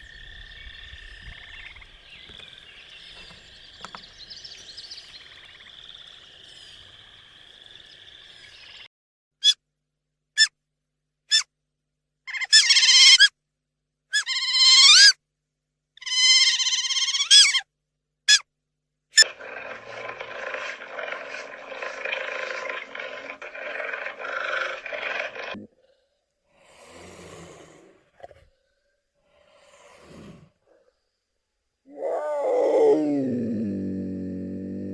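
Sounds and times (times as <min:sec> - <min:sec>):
rough noisy animal call: 0:00.0 - 0:08.8, 0:19.2 - 0:26.0, 0:31.9 - 0:34.9
loud pitched animal calls: 0:19.2 - 0:25.6, 0:31.9 - 0:33.6.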